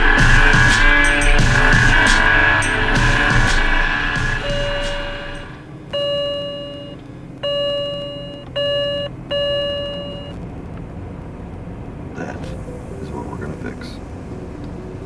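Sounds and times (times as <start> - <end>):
electronic beeps: 4.2 - 10.4.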